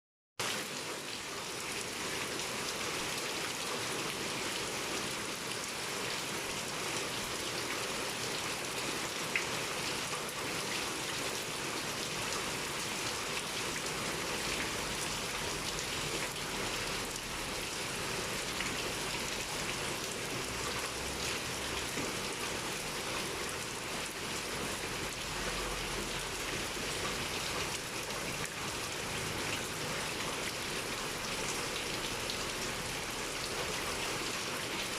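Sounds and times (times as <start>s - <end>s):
heavy rain pouring: 0.4s - 34.9s.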